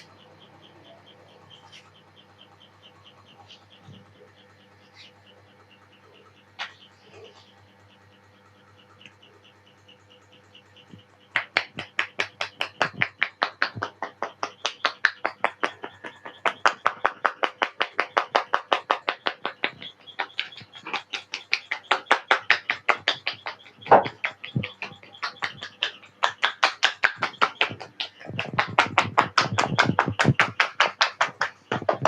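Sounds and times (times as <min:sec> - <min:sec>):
hands slapping a head: 0:11.4 - 0:32.0.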